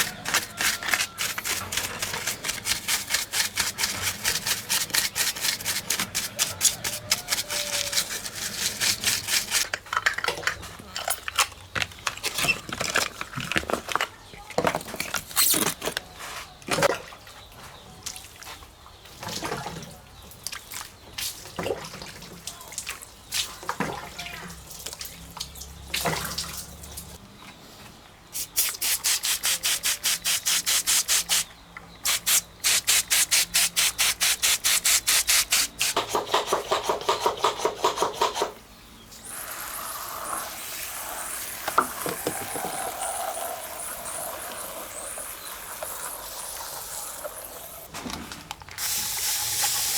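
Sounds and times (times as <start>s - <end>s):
rapid spray bursts: 0.0s - 9.7s, 28.4s - 36.8s, 39.2s - 47.9s
rubbing and knocking: 0.0s - 9.9s
steady spray hiss: 28.3s - 36.0s, 39.2s - 47.9s.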